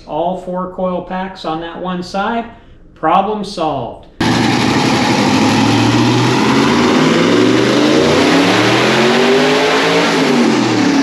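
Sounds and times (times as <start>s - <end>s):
car engine revving under load: 4.2s - 11.0s.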